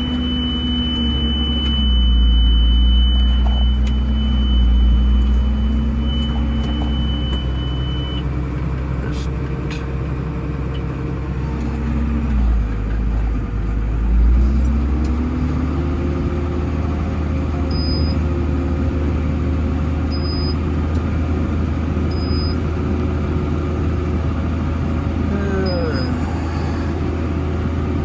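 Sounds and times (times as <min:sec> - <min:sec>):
short high beeps: 0:00.0 - 0:08.2
tractor engine under load: 0:00.0 - 0:28.0.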